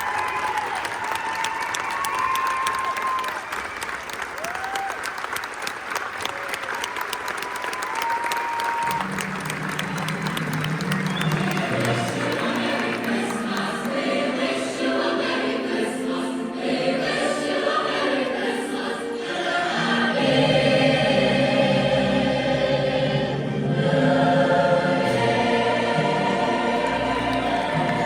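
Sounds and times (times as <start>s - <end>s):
choir singing sustained chords: 9.0s - 28.0s.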